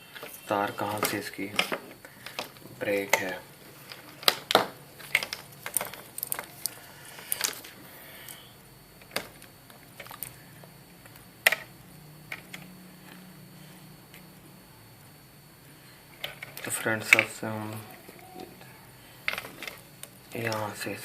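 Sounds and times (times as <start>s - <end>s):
faint low hum: 0.0s - 21.0s
small tools clicking and tapping: 0.1s - 7.7s.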